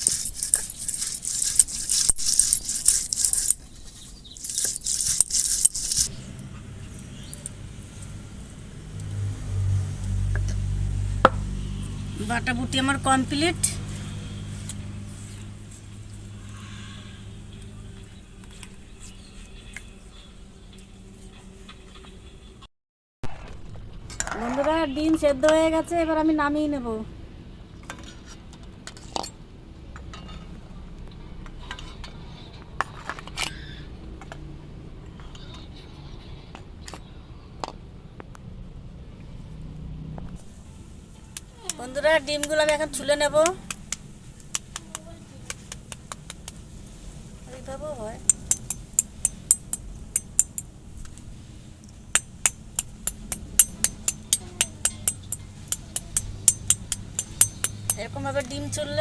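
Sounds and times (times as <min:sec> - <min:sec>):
metal cookware clinking: 0:52.2 - 0:58.1.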